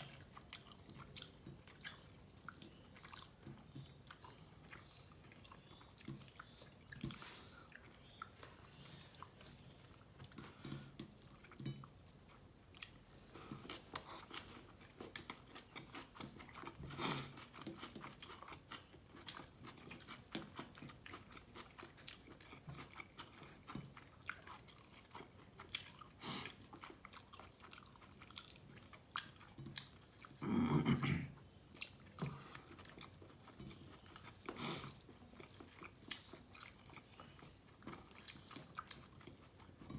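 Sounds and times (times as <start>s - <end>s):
person chewing food: 0.0s - 39.9s.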